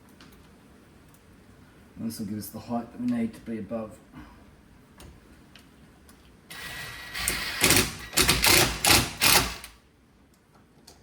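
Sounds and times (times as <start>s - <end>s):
drill driving screw into wood: 6.5s - 9.8s.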